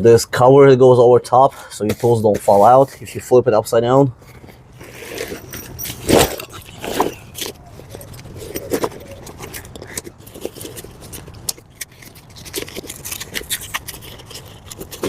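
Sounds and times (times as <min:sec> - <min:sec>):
fabric tool bag rustling: 0:04.3 - 0:09.5.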